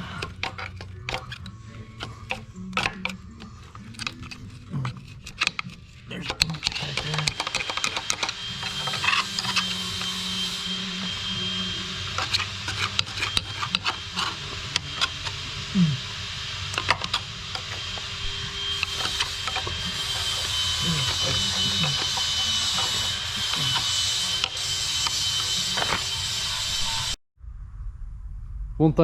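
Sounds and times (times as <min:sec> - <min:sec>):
hand tools scraping metal: 0:00.0 - 0:27.2
faint high whine: 0:06.7 - 0:28.8.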